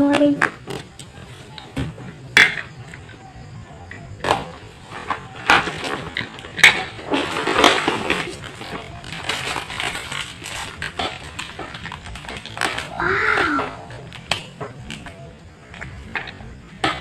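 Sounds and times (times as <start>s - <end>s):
packaging rustling: 4.8s - 13.0s.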